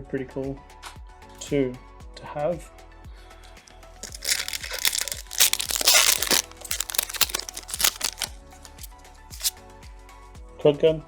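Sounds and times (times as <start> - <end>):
foil wrapper crinkling and tearing: 4.0 - 9.5.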